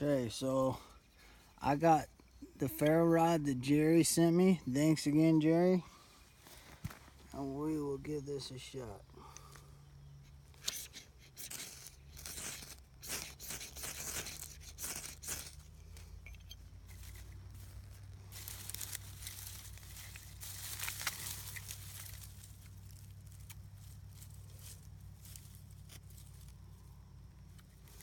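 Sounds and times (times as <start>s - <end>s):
ferro rod rasping scrapes: 10.5s - 17.4s.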